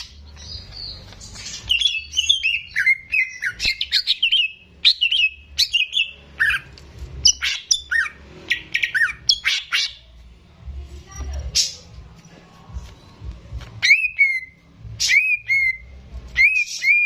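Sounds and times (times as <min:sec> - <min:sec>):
bird singing whistles and chirps: 0:00.0 - 0:09.9, 0:13.8 - 0:17.0.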